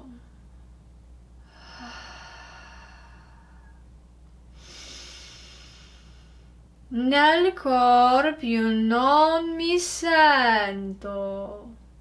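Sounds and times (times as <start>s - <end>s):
person breathing in: 1.4s - 3.8s, 4.5s - 6.6s
person breathing out: 1.4s - 3.8s, 4.6s - 6.6s.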